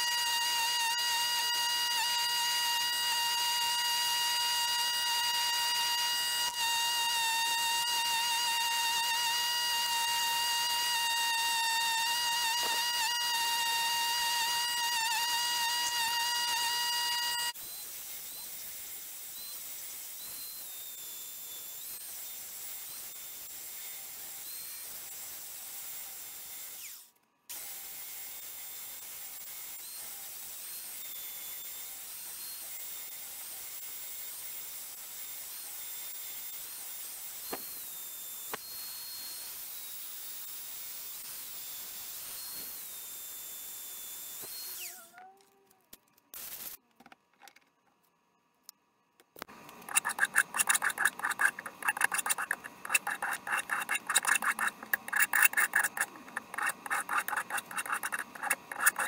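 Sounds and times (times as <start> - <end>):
high-speed power tool whining: 0.0 - 24.8, 34.9 - 45.1, 49.5 - 59.0.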